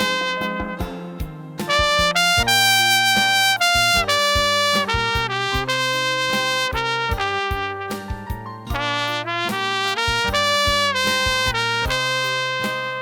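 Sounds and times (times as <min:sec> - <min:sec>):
trumpet solo melody: 0:00.0 - 0:13.0.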